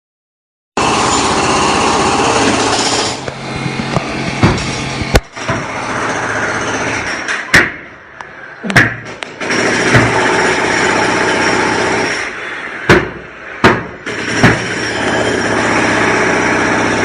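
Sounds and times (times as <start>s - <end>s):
sharp knocks: 3.8s - 5.8s, 7.2s - 7.9s, 8.7s - 10.4s, 12.9s - 14.8s
machine clatter: 9.1s - 12.3s.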